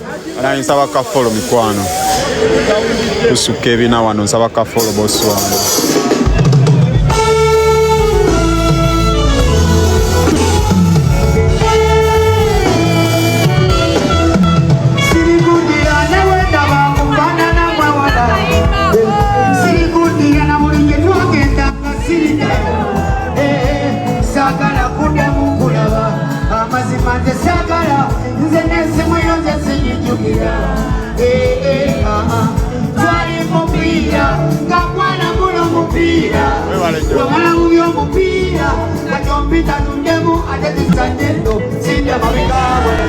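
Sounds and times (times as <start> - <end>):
amplified music with beat and bass: 5.0 - 43.0
person singing: 14.9 - 43.0.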